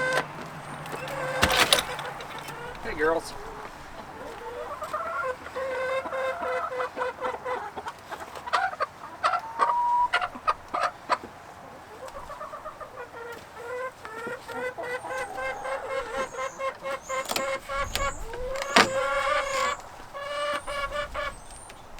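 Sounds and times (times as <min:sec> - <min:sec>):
hens clucking: 0:00.0 - 0:21.9
sharp knocks: 0:00.8 - 0:02.8, 0:17.2 - 0:19.7.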